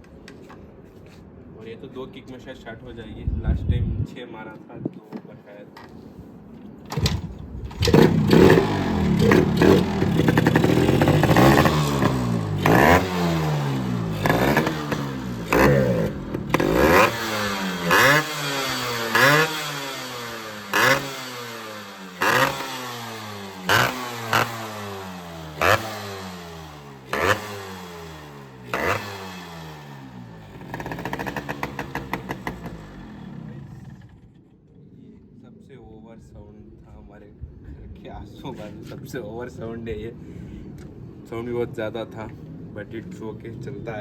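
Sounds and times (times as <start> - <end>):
two-stroke motorcycle engine revving: 6.9 - 34.4
crackly exhaust throttle blips: 6.9 - 34.5.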